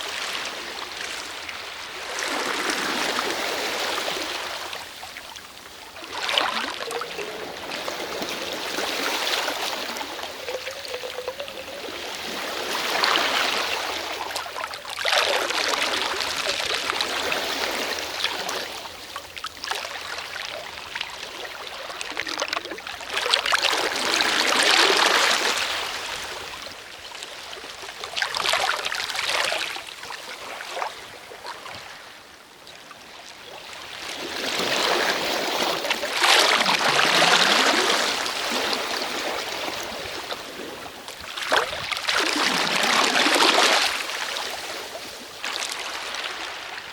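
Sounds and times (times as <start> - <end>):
sea waves washing onto shore: 0.0 - 19.4.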